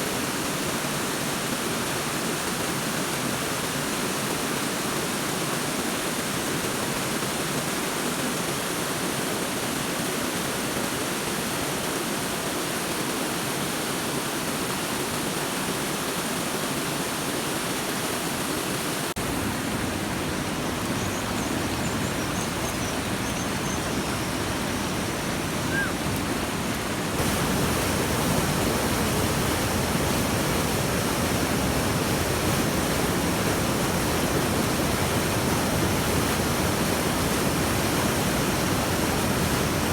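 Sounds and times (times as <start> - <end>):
rushing water: 0.0 - 39.9
faint high chirps: 25.6 - 26.1.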